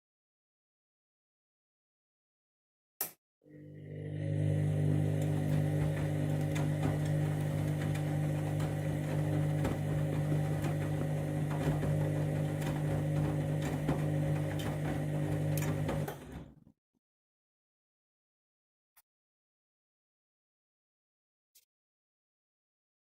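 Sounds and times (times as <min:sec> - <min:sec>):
washing machine motor hum: 0:03.5 - 0:16.6.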